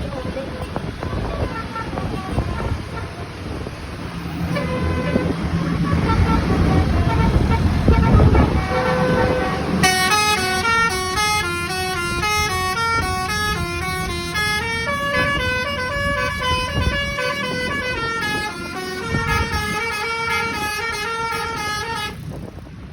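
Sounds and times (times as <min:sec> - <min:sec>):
bus horn playing fast melody: 0:00.2 - 0:22.4.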